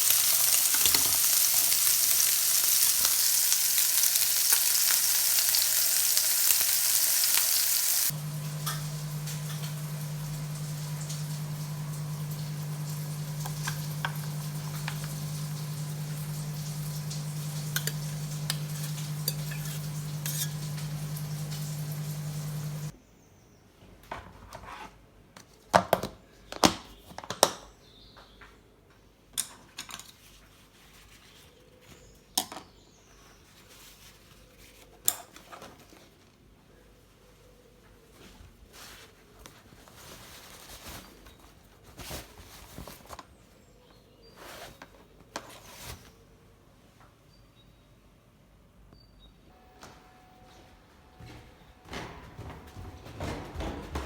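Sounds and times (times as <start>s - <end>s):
food sizzling in a frying pan: 0.0s - 22.9s
low hum: 8.1s - 22.9s
utensil taps: 8.2s - 22.9s
dishes and cutlery clinking: 8.3s - 22.9s.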